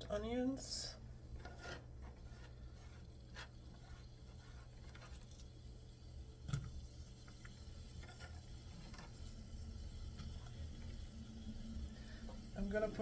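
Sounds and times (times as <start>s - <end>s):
onions scraping in frying pan: 1.4s - 5.3s.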